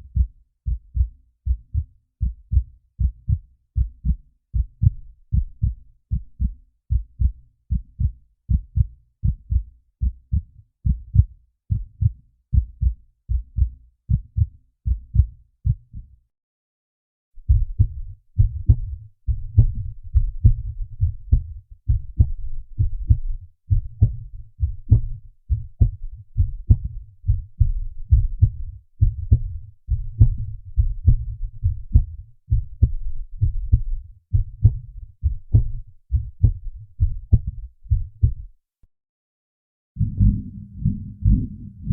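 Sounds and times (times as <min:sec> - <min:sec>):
fast heartbeat: 0:00.0 - 0:16.1, 0:17.4 - 0:38.5, 0:40.0 - 0:41.9
heartbeat thumps: 0:00.0 - 0:16.1, 0:17.4 - 0:38.5, 0:40.0 - 0:41.9
continuous low rumble: 0:40.0 - 0:41.9.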